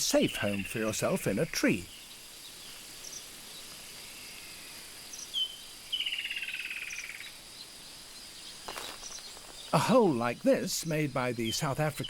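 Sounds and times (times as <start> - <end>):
insects hissing: 0.0 - 12.0.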